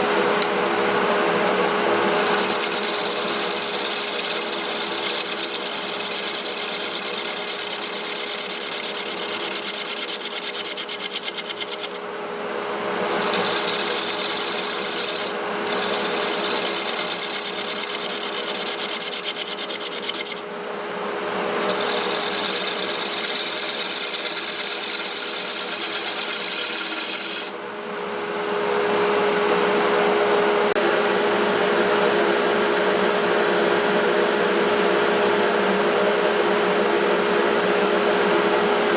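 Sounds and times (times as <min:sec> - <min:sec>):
wood lathe hum: 0:00.0 - 0:20.5, 0:21.3 - 0:27.6
turning tool cutting hiss: 0:02.0 - 0:12.0, 0:13.1 - 0:20.4, 0:21.6 - 0:27.5.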